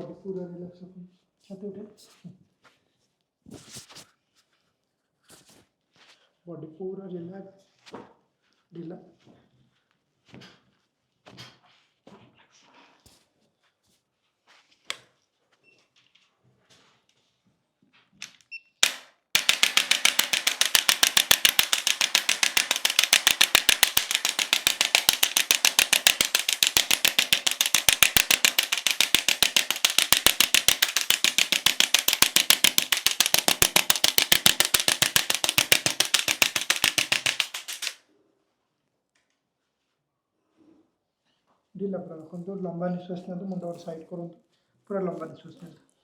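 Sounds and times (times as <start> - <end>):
adjusting instrument clicking rapidly: 18.8 - 38.0.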